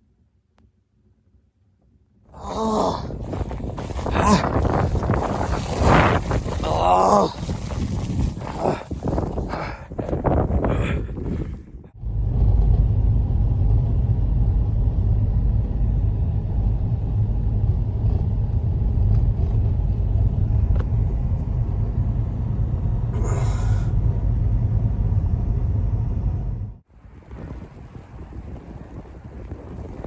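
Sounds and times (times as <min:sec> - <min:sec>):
hissing wind gust: 0:02.4 - 0:11.9, 0:27.0 - 0:30.0
storm wind buffeting microphone: 0:02.4 - 0:30.0.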